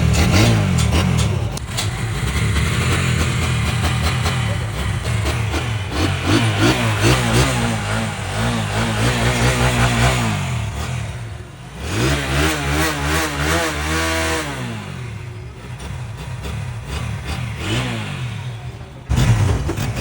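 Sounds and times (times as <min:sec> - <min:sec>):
engine revving: 0:00.0 - 0:20.0.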